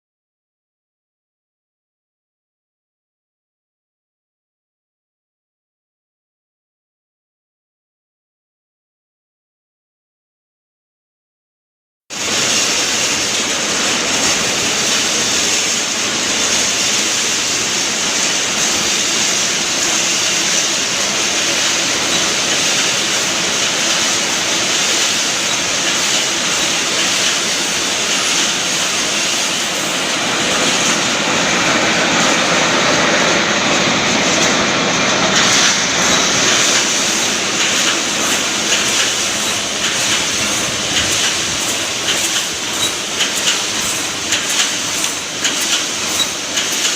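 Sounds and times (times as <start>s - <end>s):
machine hiss: 12.2s - 46.9s.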